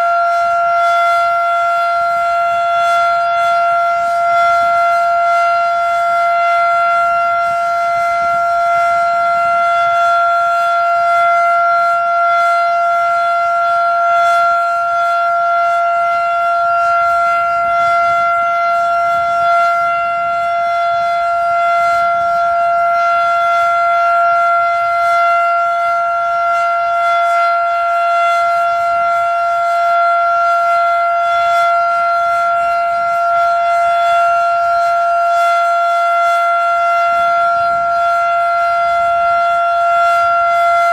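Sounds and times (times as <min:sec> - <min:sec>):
warning siren steady pitch: 0:00.0 - 0:40.9.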